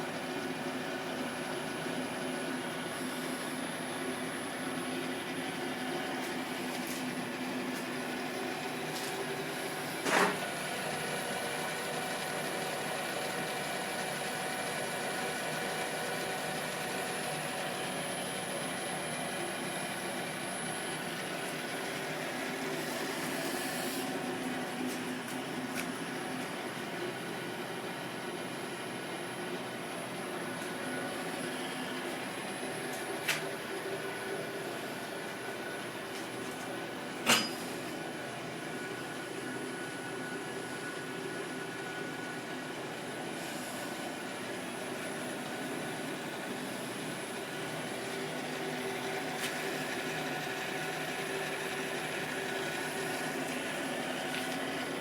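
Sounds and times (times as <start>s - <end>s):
metal lathe running: 10.6s - 37.6s.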